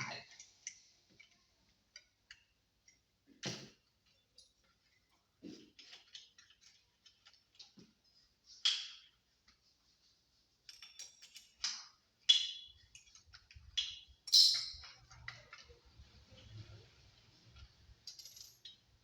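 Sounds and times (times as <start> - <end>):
ringing clinks: 14.3 - 14.9.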